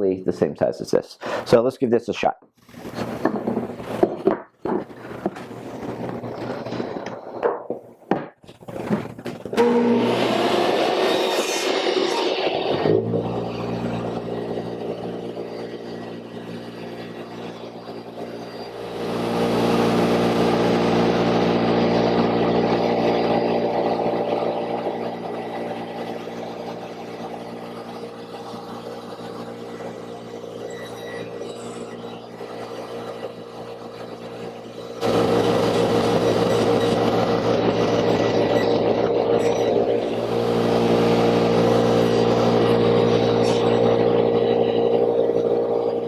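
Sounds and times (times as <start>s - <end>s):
table saw cutting wood: 9.5s - 46.0s.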